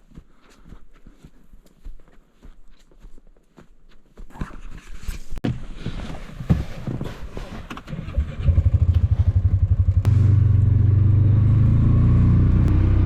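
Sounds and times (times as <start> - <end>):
vehicle engine starting and idling: 7.8 - 13.0.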